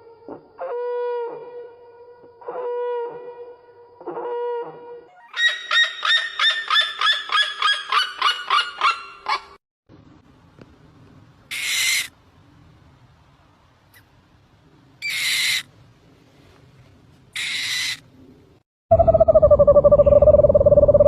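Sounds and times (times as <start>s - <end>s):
harsh hissing bird screech: 11.5s - 12.1s, 15.0s - 15.7s, 17.4s - 18.0s.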